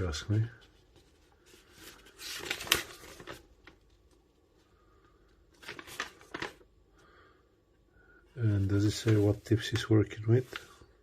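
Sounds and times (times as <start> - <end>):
packaging rustling and crinkling: 0.9 - 4.2, 5.5 - 6.7.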